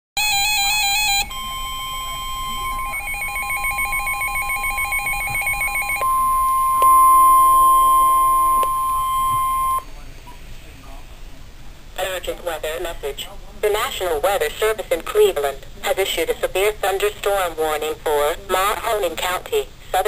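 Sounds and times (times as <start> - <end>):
electronic beeping tones: 0.2 - 9.9
warbling data tones: 0.3 - 9.8.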